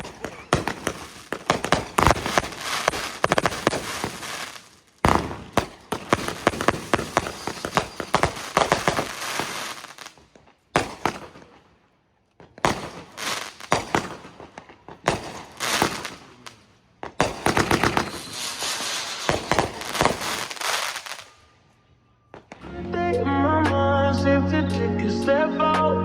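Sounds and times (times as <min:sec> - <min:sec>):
fireworks popping and crackling: 0:00.0 - 0:11.8, 0:12.4 - 0:21.4.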